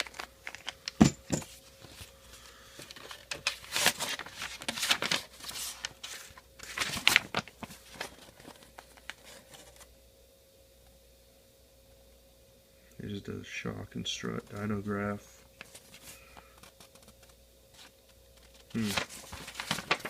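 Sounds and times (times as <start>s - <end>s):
packaging crinkling and rustling: 0.0s - 2.1s, 2.8s - 9.9s, 15.6s - 20.0s.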